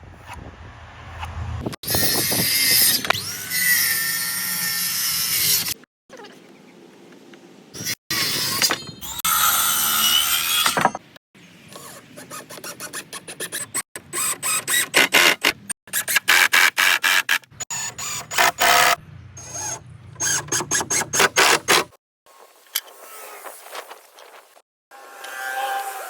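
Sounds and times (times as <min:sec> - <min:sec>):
woodworking tools clicking on wood: 0:11.8 - 0:19.0, 0:19.6 - 0:22.0.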